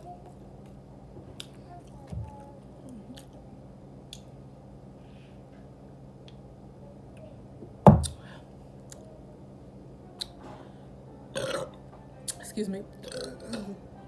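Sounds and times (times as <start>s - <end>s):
loud low thump: 7.9s - 8.2s.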